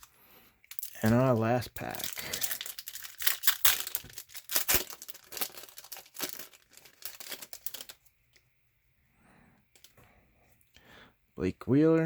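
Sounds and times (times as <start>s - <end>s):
wrapper tearing and crinkling: 0.7s - 8.1s.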